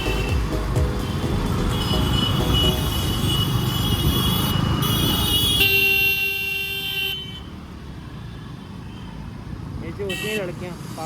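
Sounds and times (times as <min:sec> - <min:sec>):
vehicle horn: 0:00.0 - 0:07.5
road traffic rumble: 0:00.0 - 0:11.0.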